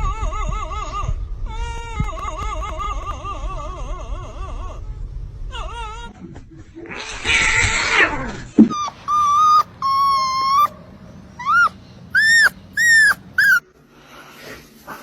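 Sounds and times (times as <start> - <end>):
dog whining: 8.6 - 13.6.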